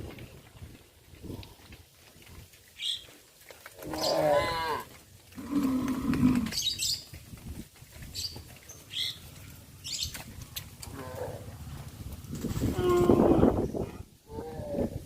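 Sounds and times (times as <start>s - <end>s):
birds chirping: 2.8s - 3.2s, 5.4s - 7.2s, 8.0s - 11.4s
cows mooing: 3.8s - 6.6s, 10.8s - 11.6s.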